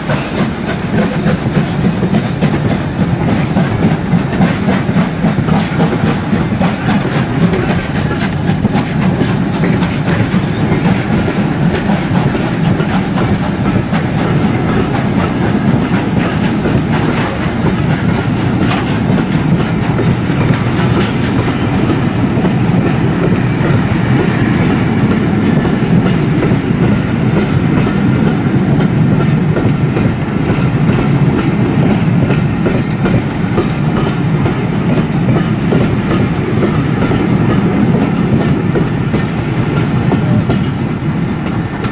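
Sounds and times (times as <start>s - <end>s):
train rumbling on rails: 0.0s - 41.9s
wheels clicking over rail joints: 0.1s - 24.4s.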